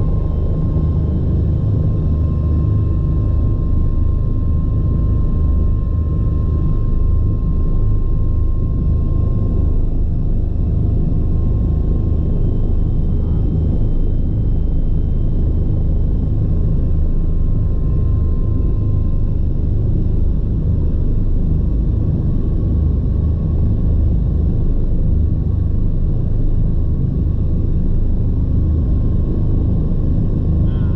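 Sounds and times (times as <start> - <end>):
faint high whine: 0.0 - 16.3, 30.6 - 30.9
helicopter rumble: 0.0 - 30.9.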